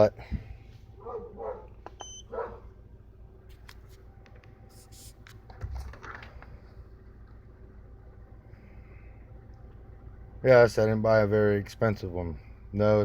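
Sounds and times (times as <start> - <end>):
engine idling hum: 0.0 - 13.0
short electronic beep: 2.0 - 2.3.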